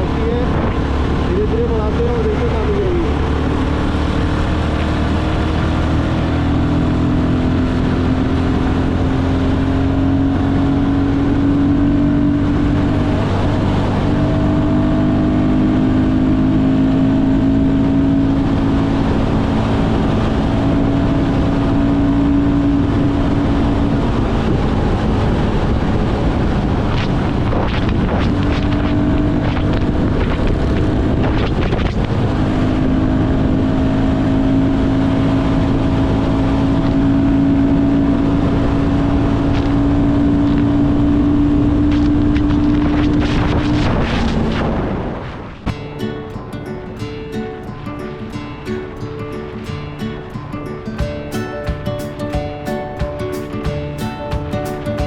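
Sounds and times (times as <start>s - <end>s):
motorcycle engine cruising: 0.0s - 55.0s
wind noise on microphone: 0.0s - 55.0s.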